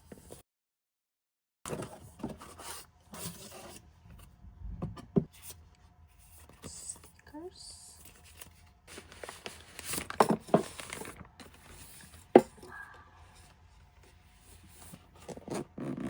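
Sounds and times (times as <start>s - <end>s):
packaging rustling and knocks: 8.9s - 12.6s.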